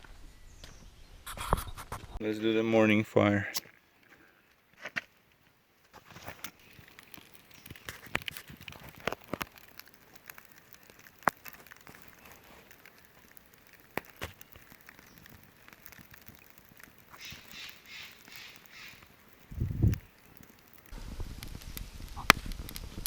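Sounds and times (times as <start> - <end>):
campfire crackling: 0.0 - 23.0.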